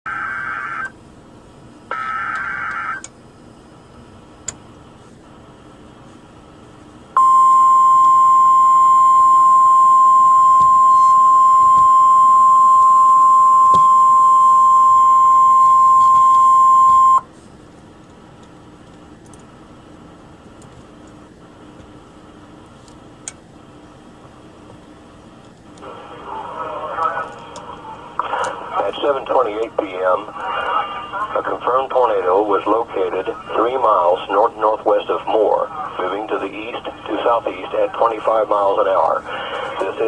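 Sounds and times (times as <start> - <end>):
harsh digital data tones: 1.9 - 3.1, 7.2 - 17.2
steady warning alarm tone: 1.9 - 3.1, 7.2 - 17.3.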